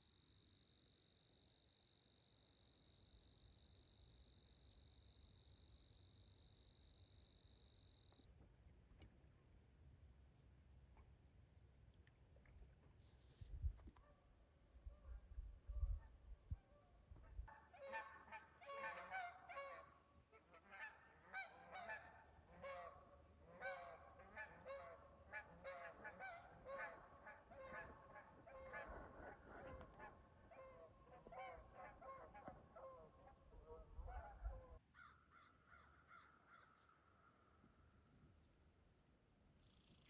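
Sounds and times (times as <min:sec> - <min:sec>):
birds honking: 0:20.7 - 0:34.5.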